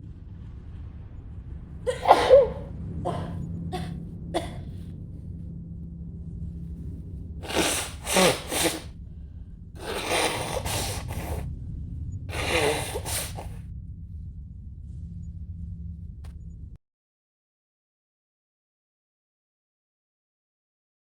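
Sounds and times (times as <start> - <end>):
low hum: 0.0 - 16.8
woman sneezing: 1.9 - 4.6, 7.4 - 8.9, 9.8 - 11.4, 12.3 - 13.6
gasping breaths: 1.9 - 4.8, 7.4 - 8.9, 9.8 - 11.4, 12.3 - 13.6.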